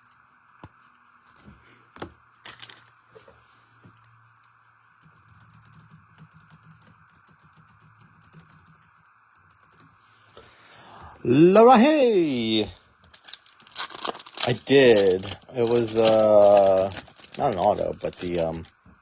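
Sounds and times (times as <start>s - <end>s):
steady low hiss: 10.0s - 19.0s.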